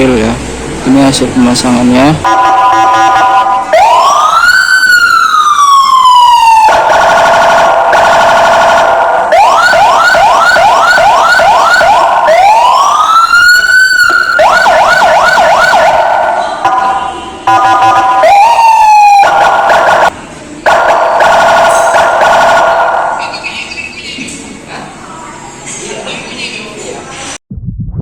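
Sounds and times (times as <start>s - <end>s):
electronic siren wailing and whooping: 2.3s - 20.1s, 20.7s - 23.6s.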